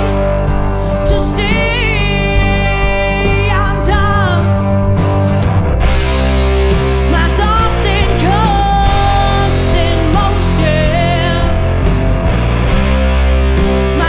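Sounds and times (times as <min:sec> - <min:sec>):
person singing: 0:00.0 - 0:04.8, 0:06.8 - 0:12.1
rock band playing: 0:00.0 - 0:14.0.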